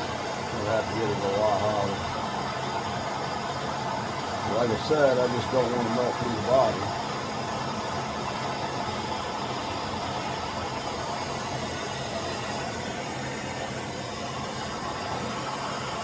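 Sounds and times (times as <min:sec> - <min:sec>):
heat gun fan and air rush: 0:00.0 - 0:16.0.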